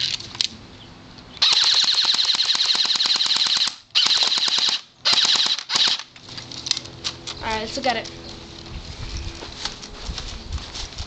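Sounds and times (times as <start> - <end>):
airsoft rifle automatic fire: 1.4 - 6.0.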